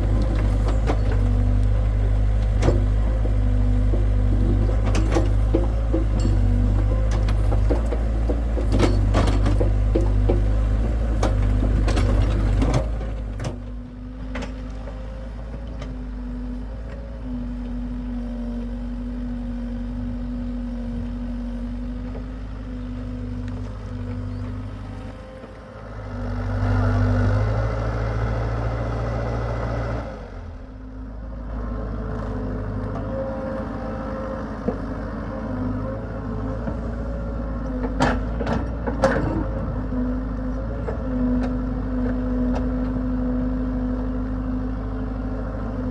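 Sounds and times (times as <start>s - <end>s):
excavator diesel engine: 0.0s - 45.9s.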